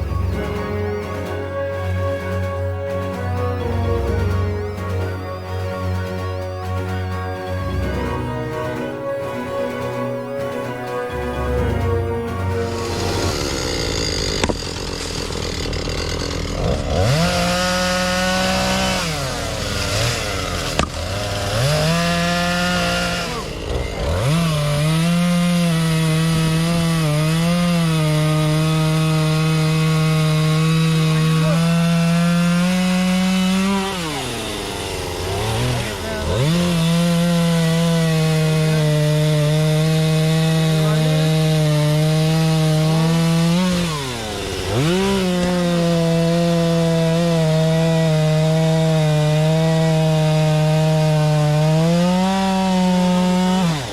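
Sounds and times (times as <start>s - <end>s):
chainsaw cutting wood: 0.0s - 53.9s.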